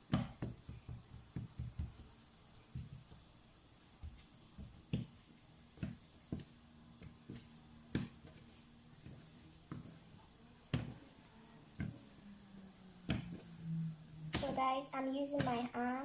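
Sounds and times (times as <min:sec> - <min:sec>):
hands pressing pizza dough: 0:00.0 - 0:12.1.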